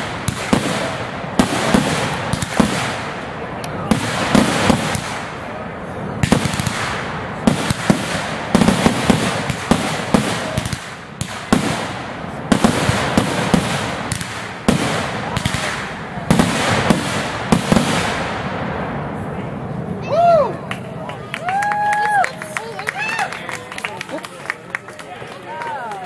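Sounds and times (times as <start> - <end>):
fireworks bangs: 0.0 - 20.0
fireworks crackling: 0.0 - 26.0.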